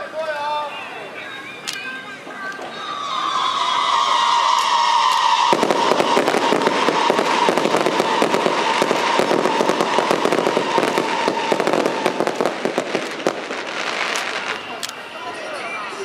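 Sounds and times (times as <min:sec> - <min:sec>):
fireworks crackling: 0:00.0 - 0:16.0
high whistling tone: 0:00.8 - 0:12.7.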